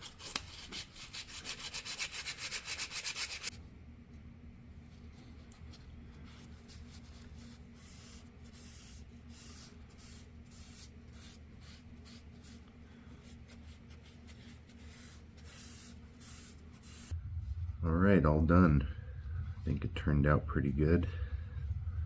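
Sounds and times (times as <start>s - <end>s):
sandpaper rubbing wood: 0.0s - 3.5s
steady low hum: 3.5s - 22.0s.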